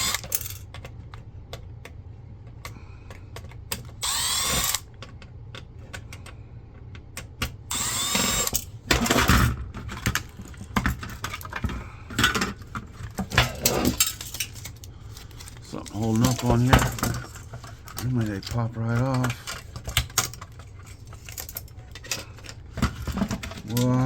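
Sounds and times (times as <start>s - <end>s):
drill motor whirring: 0.0s - 0.4s, 4.0s - 4.9s, 7.7s - 8.7s
screws and parts rattling: 0.0s - 1.0s, 7.7s - 24.0s.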